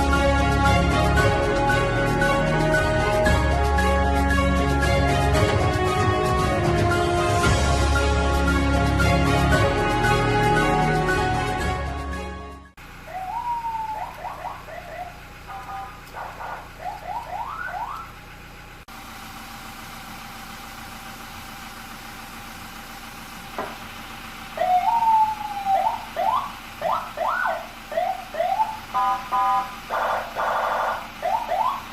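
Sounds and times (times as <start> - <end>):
electronic siren: 13.1 - 18.2, 24.6 - 31.9.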